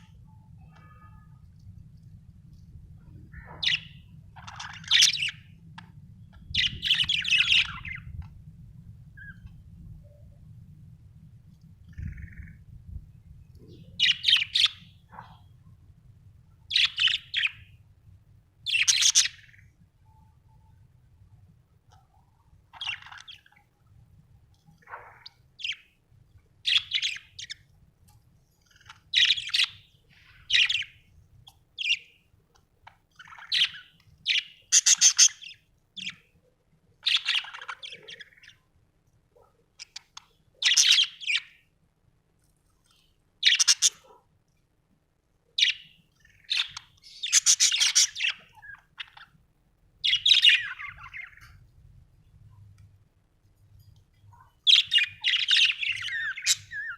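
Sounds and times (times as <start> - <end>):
budgerigar chirping: 33.2 - 36.2, 43.4 - 44.2, 45.6 - 49.3, 54.7 - 56.9.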